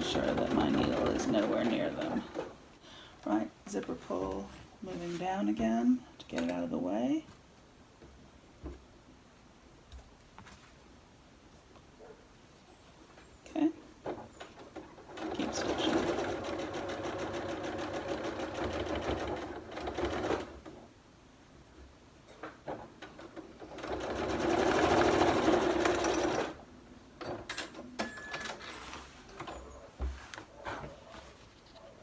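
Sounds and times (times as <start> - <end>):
sewing machine stitching: 0.0 - 2.6, 14.4 - 20.8, 22.8 - 26.6.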